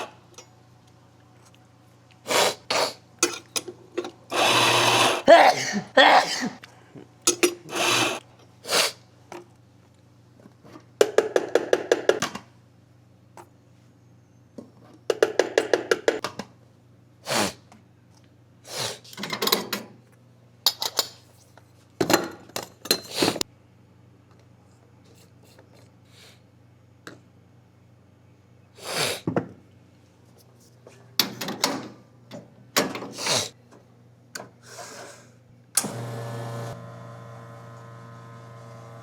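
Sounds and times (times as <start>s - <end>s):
man sniffing through congested nose: 2.2s - 3.0s, 7.7s - 9.0s, 17.2s - 17.6s, 18.6s - 19.0s, 28.8s - 29.3s, 34.6s - 35.4s.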